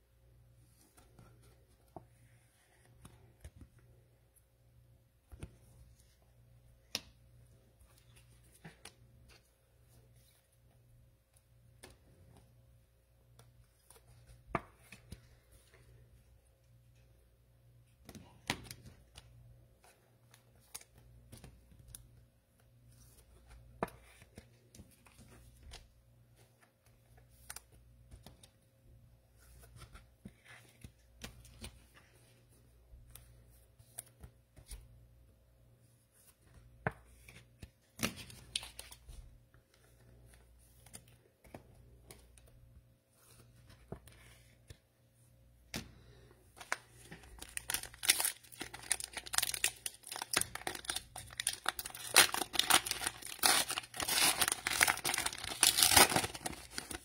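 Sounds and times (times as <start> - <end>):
plastic wrapper crinkling: 46.6 - 57.0.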